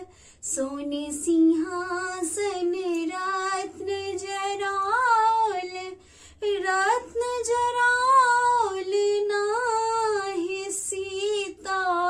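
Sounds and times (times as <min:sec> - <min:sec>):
woman singing folk song: 0:00.0 - 0:12.0.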